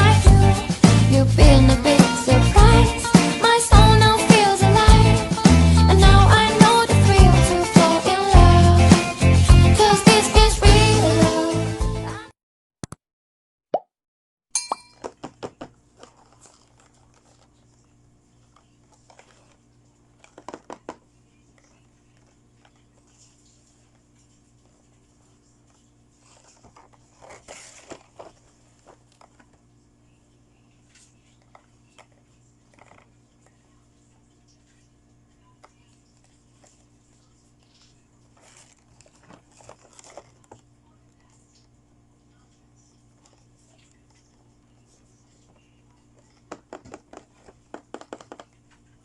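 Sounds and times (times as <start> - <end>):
faint room hum: 14.8 - 49.0
toy pieces and packaging rustling: 15.0 - 24.8, 25.6 - 29.6, 37.6 - 41.3
clicks and taps of toy pieces: 20.2 - 21.0, 46.5 - 48.5.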